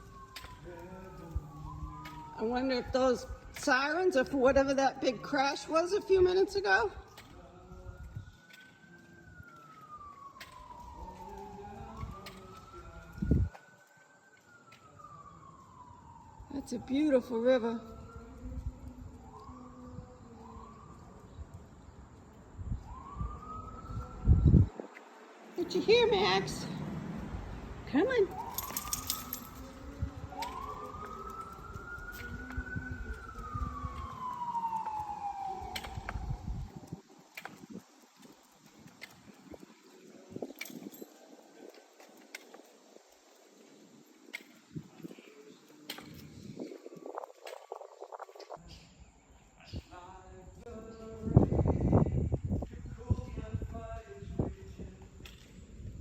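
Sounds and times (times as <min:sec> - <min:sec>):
emergency siren wailing: 0:00.0 - 0:49.3.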